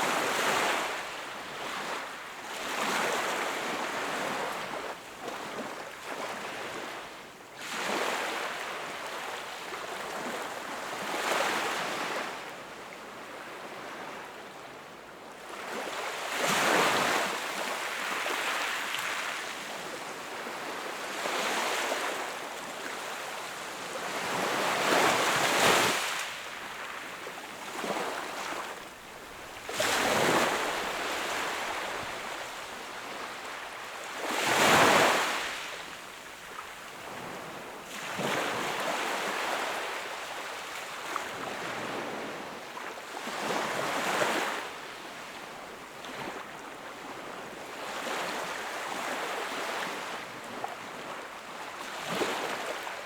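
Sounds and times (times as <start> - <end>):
sea waves breaking on shore: 23.8 - 40.1.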